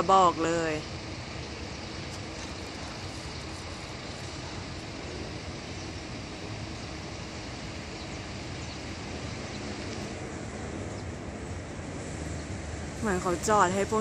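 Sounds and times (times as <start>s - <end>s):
outdoor rumble and hiss: 0.0s - 14.0s.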